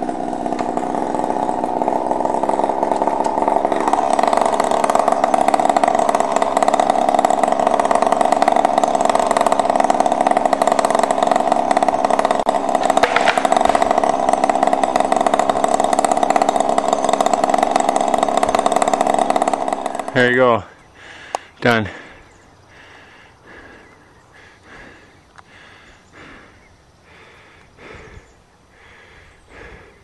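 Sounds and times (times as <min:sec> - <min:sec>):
chainsaw cutting wood: 0:00.0 - 0:21.5, 0:24.6 - 0:26.5.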